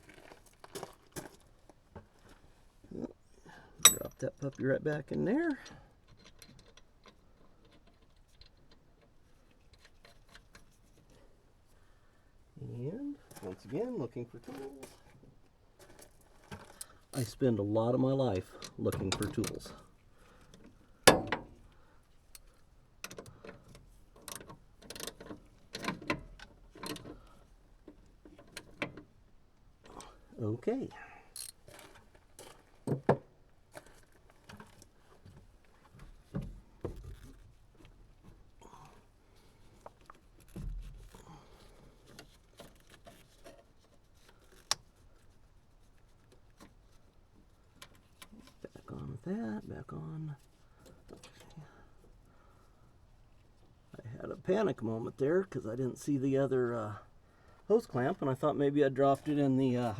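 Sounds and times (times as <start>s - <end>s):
metal hand tools clinking: 3.8s - 4.2s.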